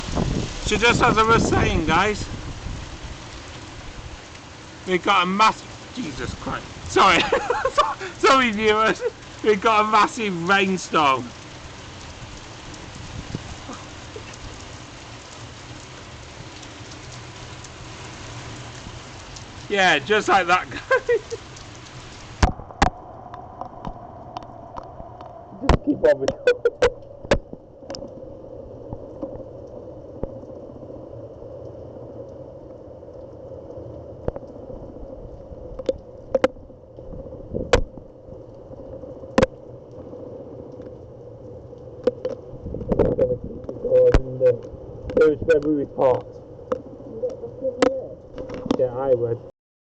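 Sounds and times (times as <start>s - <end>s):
heavy rain falling: 0.0s - 49.5s
constant hum: 13.5s - 49.5s.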